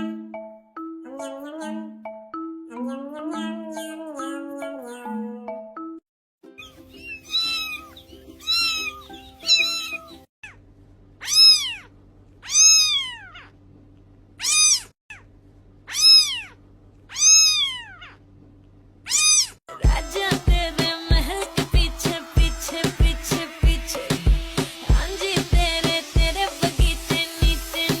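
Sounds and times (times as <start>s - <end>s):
cat meowing: 7.0s - 10.6s, 11.2s - 13.5s, 14.4s - 14.9s, 15.9s - 18.2s, 19.1s - 19.6s
low background music: 19.7s - 28.0s.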